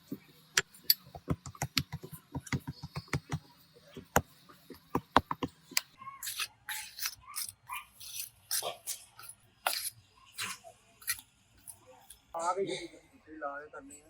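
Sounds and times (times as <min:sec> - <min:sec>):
rasping scraping strokes: 0:06.2 - 0:11.7.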